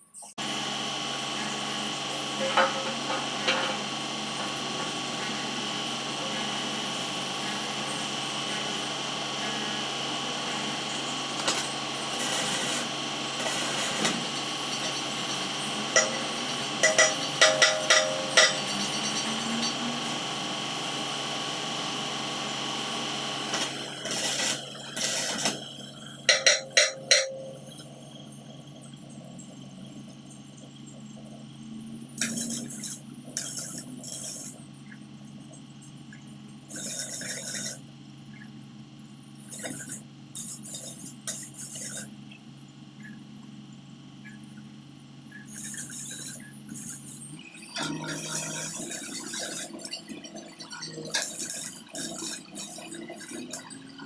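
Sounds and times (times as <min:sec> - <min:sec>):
machine hum: 0:00.0 - 0:54.0
tool scraping steel: 0:02.4 - 0:08.0, 0:15.9 - 0:19.9, 0:26.2 - 0:27.6
tool tapping on steel: 0:16.0 - 0:19.8, 0:26.3 - 0:27.6.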